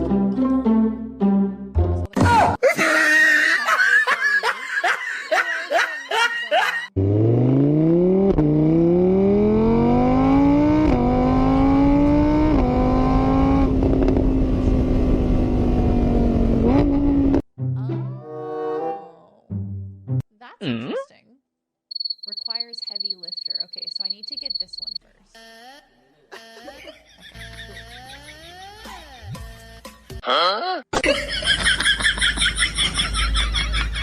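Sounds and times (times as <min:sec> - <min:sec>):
vehicle engine revving: 0:07.0 - 0:17.4
high wavering squeals: 0:22.0 - 0:25.0.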